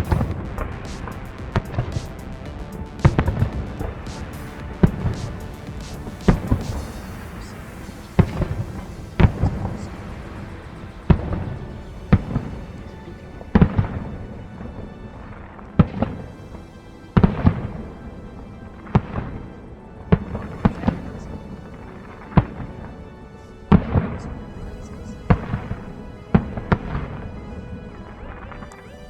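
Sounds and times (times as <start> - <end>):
firework crackling: 0.0 - 12.8.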